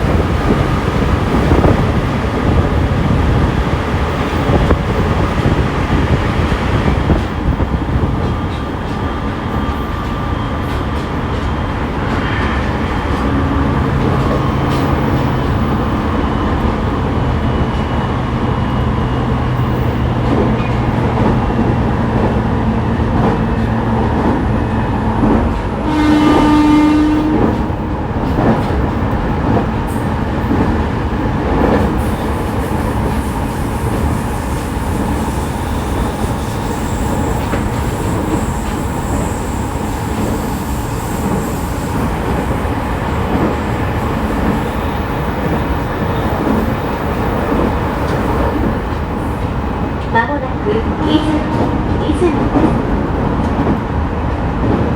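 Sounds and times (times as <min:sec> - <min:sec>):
train wheel and rail noise: 0:00.0 - 0:54.9
train horn blast: 0:25.8 - 0:27.8, 0:50.2 - 0:52.6.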